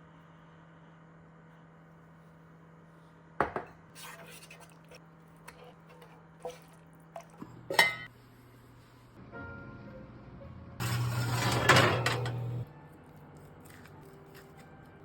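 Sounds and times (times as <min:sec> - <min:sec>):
utensils clinking against dishes: 0:07.7 - 0:08.1, 0:10.9 - 0:12.6.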